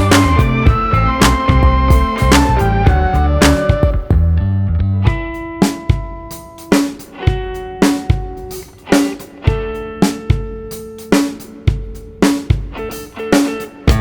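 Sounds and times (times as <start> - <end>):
steady drum beat: 0.0 - 4.4, 5.1 - 14.0
guitar notes: 0.0 - 14.0.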